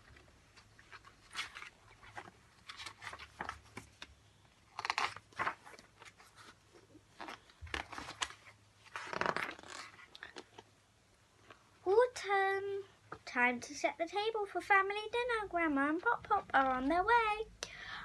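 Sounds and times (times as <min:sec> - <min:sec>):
book pages rustling and turning: 0:00.0 - 0:10.8, 0:11.4 - 0:11.8, 0:16.2 - 0:17.0.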